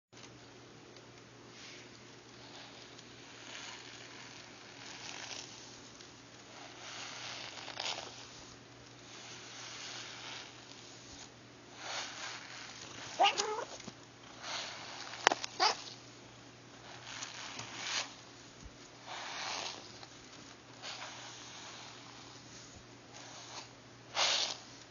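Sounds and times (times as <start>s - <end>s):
cat breathy noises: 13.2s - 13.8s
cat wavering cry: 13.2s - 13.8s, 15.6s - 15.9s.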